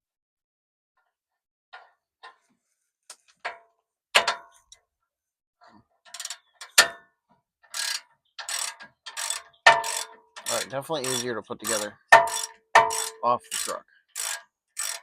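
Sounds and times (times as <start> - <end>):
metal clicks and clanks: 4.2 - 4.6, 6.0 - 15.0
ratchet clicking: 6.1 - 7.0, 7.7 - 15.0.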